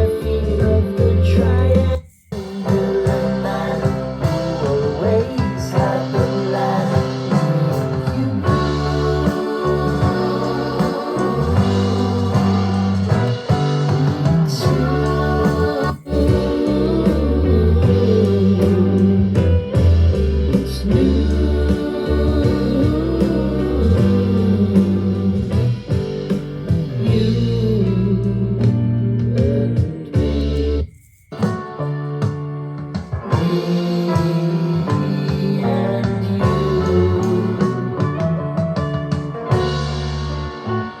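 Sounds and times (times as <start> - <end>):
song with guitar and singing: 0.0 - 41.0.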